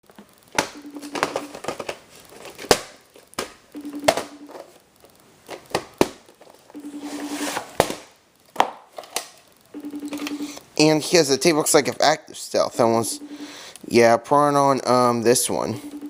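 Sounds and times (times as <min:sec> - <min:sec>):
plastic crinkling: 0:00.1 - 0:03.7.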